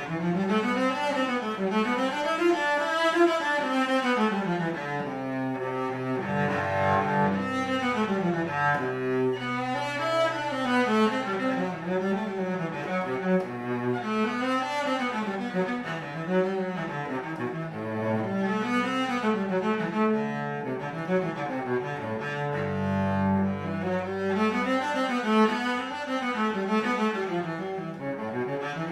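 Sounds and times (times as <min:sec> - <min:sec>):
bowed cello melody: 0:00.0 - 0:28.9.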